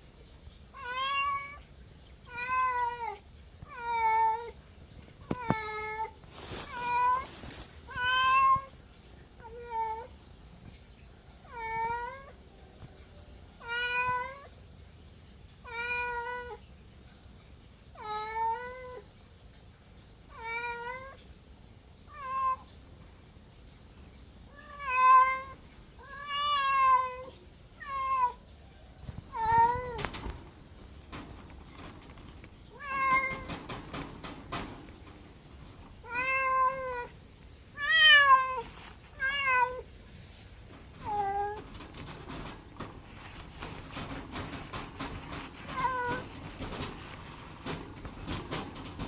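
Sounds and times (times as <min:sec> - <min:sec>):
cat meowing: 0:00.8 - 0:01.6, 0:05.3 - 0:08.7, 0:32.7 - 0:34.2, 0:36.0 - 0:37.2, 0:37.8 - 0:39.9
sharp clicks: 0:29.5 - 0:36.0, 0:40.7 - 0:49.0.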